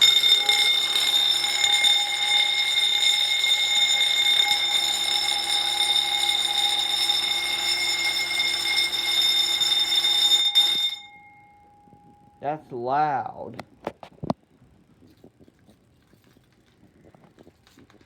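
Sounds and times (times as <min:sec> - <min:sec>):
fire alarm bell ringing: 0:00.0 - 0:12.5.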